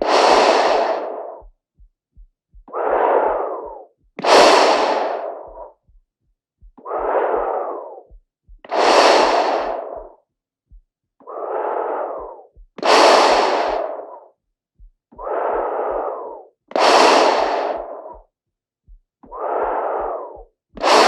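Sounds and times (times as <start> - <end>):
breathing through gas mask: 0.0 - 1.6, 2.7 - 5.8, 6.8 - 10.2, 11.2 - 14.3, 15.2 - 18.3, 19.2 - 21.0.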